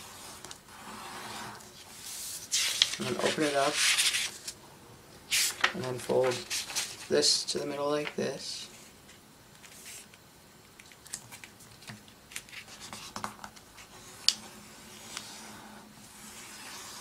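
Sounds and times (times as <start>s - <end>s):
paper rubbing and crinkling: 0.0s - 4.6s, 5.3s - 7.2s, 10.8s - 14.2s.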